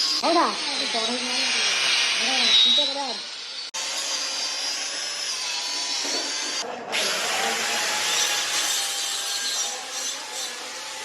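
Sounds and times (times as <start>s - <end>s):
power tool rasping hiss: 0.0s - 11.0s.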